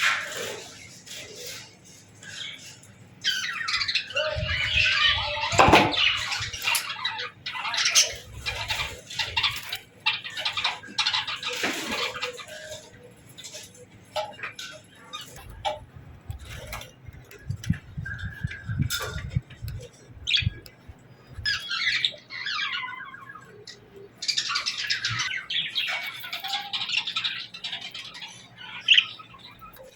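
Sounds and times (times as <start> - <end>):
budgerigars chirping: 2.2 - 13.6, 21.4 - 29.9.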